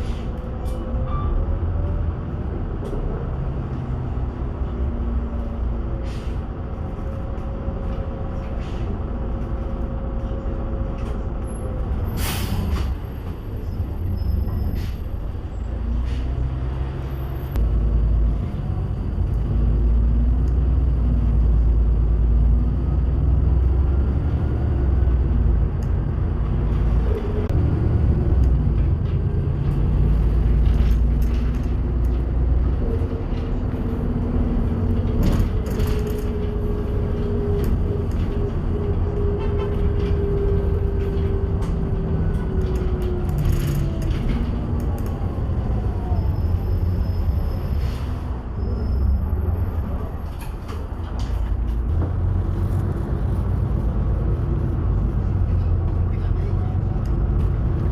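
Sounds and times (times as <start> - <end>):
bus engine whining: 0.0 - 57.9
air brake hiss: 12.2 - 12.9.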